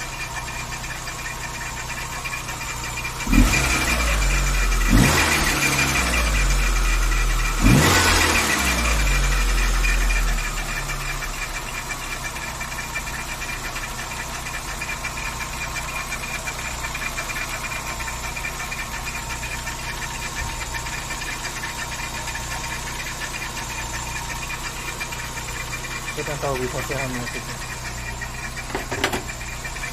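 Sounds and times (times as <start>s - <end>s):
engine idling: 0.0s - 29.9s.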